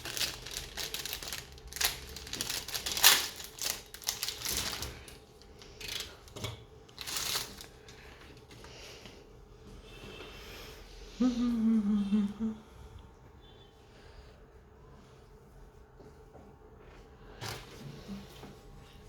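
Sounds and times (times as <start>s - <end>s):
computer parts clicking and rustling: 0.0s - 8.0s.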